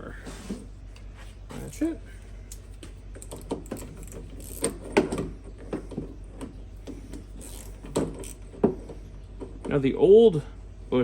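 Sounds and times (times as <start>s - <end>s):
hand ratchet clicking: 3.2s - 4.8s, 7.4s - 8.4s.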